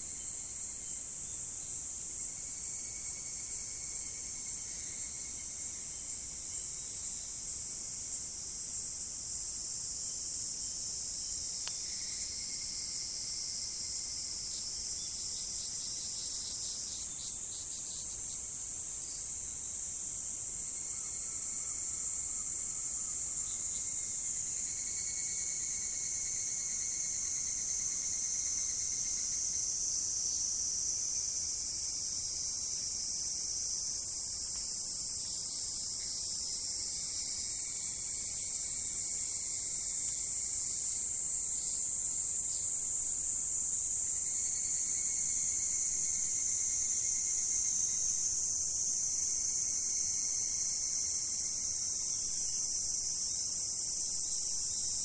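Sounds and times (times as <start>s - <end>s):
crickets and insects chorus: 0.0s - 55.0s
fast pulsing insect call: 11.4s - 55.0s
single insects trilling: 20.6s - 55.0s.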